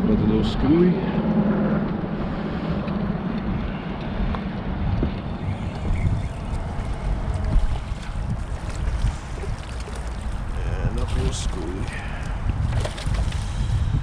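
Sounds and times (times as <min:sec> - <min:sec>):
wind buffeting microphone: 0:00.0 - 0:14.0
faint water wash: 0:00.2 - 0:14.0.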